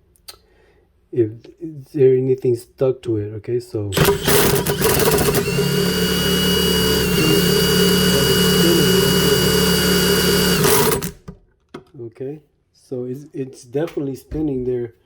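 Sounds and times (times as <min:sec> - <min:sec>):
power drill motor whirring: 0:04.0 - 0:11.4.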